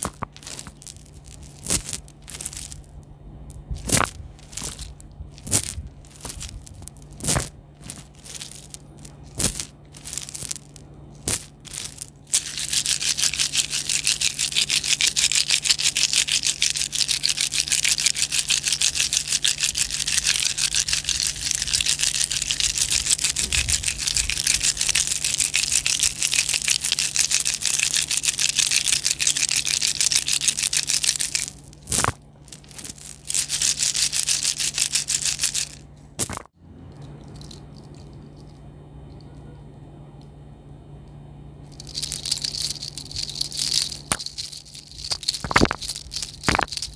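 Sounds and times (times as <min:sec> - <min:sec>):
high-pitched crackle: 0:00.0 - 0:36.5, 0:41.7 - 0:46.9.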